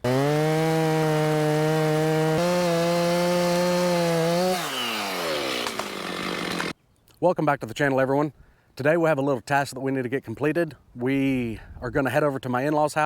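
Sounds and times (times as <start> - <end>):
chainsaw at full throttle: 0.0 - 6.7.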